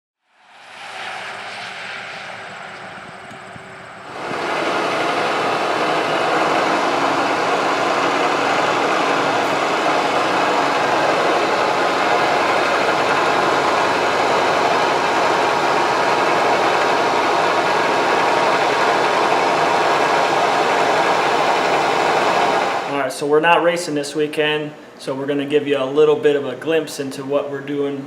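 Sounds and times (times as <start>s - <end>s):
engine running: 0.4s - 23.0s.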